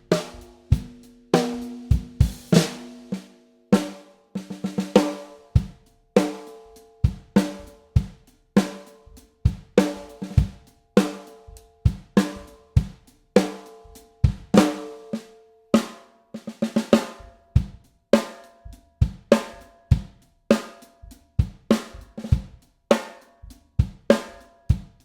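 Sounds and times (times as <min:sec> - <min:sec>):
bass drum beats: 0:00.0 - 0:02.9, 0:09.5 - 0:10.6, 0:14.2 - 0:14.6, 0:17.2 - 0:17.8, 0:18.7 - 0:20.2, 0:21.0 - 0:22.6, 0:23.5 - 0:25.0.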